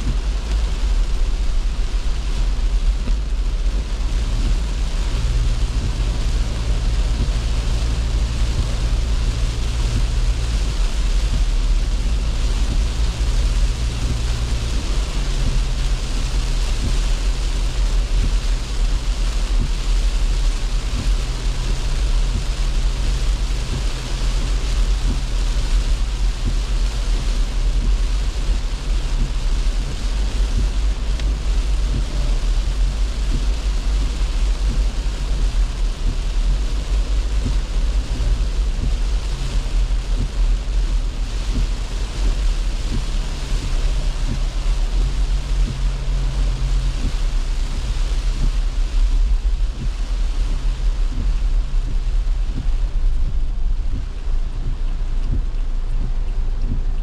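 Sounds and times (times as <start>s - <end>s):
engine and road noise drone: 0.0s - 57.0s
rain: 0.0s - 57.0s
wet tyres hissing: 0.0s - 57.0s.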